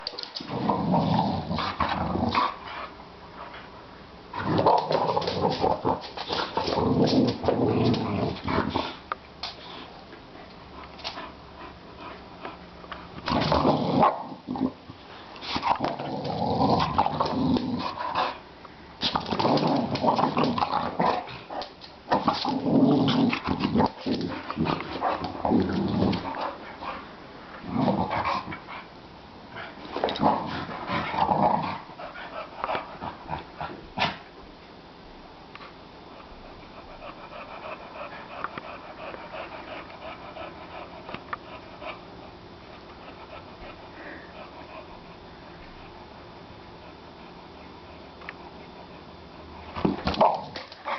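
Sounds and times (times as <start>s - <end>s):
dogs growling: 0.4s - 2.9s, 4.3s - 9.0s, 13.2s - 14.8s, 15.5s - 18.4s, 19.0s - 28.8s, 29.5s - 34.2s.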